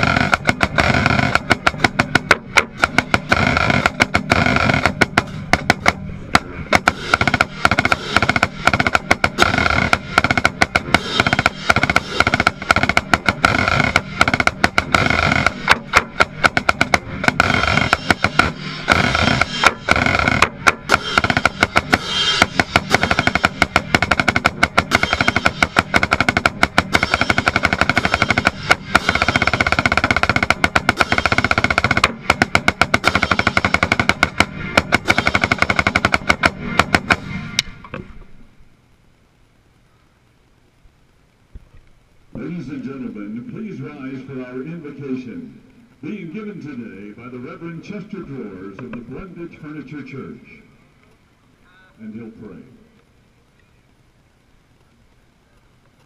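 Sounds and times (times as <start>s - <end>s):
marching snare drum rolls: 0.0s - 38.2s
marching band sustained chords: 0.0s - 38.7s, 42.3s - 50.9s.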